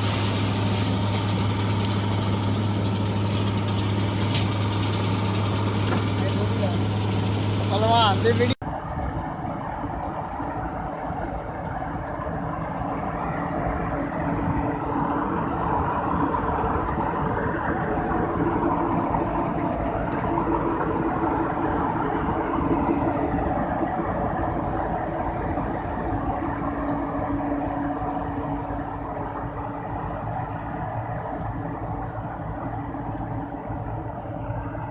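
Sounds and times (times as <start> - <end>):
harvesting machine humming: 0.0 - 8.6.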